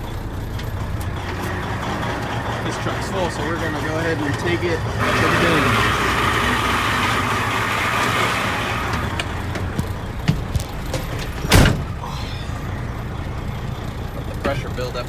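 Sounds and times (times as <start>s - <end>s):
diesel truck engine running: 0.0s - 15.0s
heavy thump: 9.0s - 12.1s.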